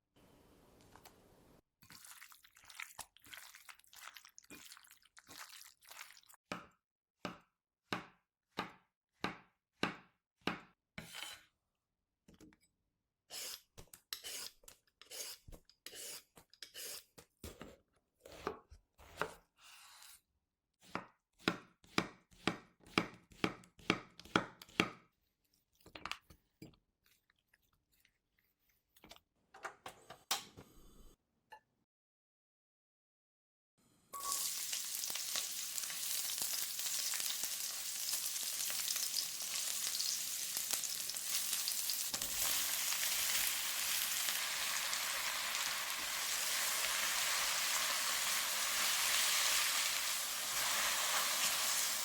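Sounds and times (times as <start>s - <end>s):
knife chopping on cutting board: 6.5s - 11.4s, 20.8s - 25.0s.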